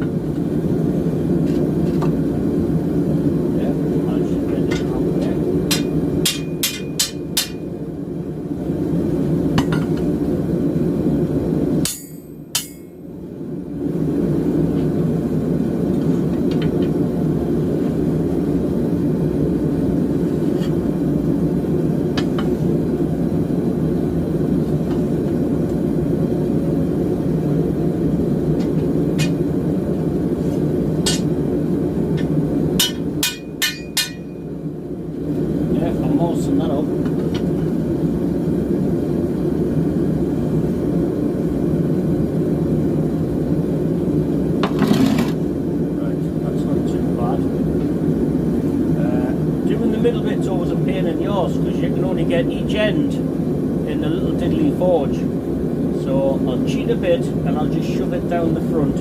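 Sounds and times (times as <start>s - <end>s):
running forge noise: 0.0s - 59.0s
hammer striking steel: 5.7s - 7.7s, 11.8s - 13.1s, 31.0s - 31.3s, 32.8s - 34.4s.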